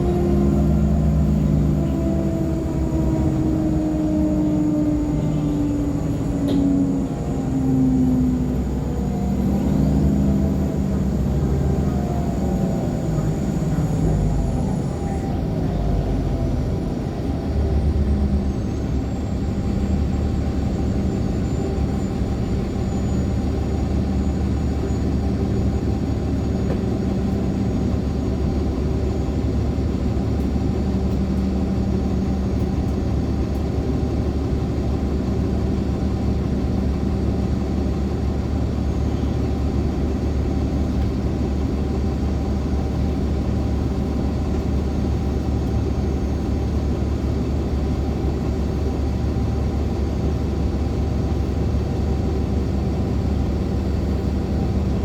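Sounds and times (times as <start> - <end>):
bus diesel engine drone: 0.0 - 55.0.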